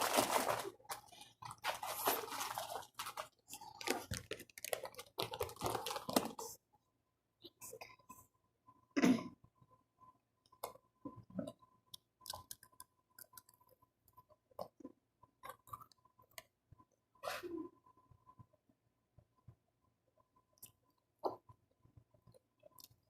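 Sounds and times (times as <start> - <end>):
person chewing food: 11.4 - 13.8.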